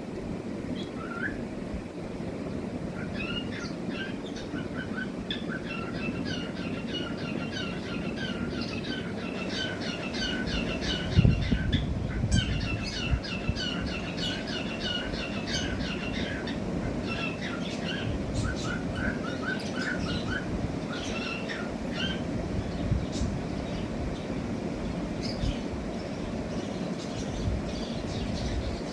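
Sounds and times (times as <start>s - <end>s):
cockatiels chirping: 3.0s - 22.2s.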